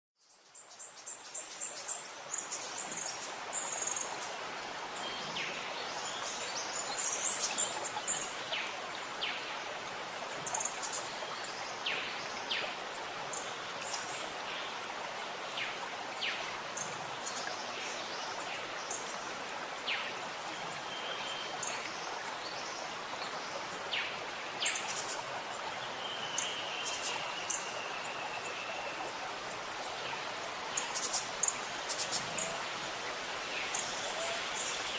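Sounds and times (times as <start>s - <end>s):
waterfall rushing: 22.4s - 34.9s.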